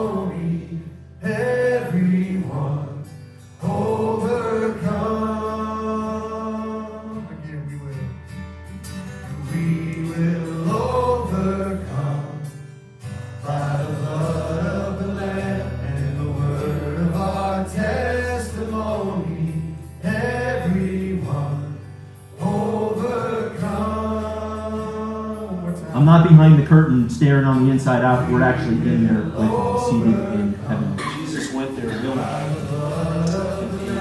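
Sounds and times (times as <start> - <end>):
sung melody: 25.8 - 34.0
steady bass line: 25.9 - 31.0.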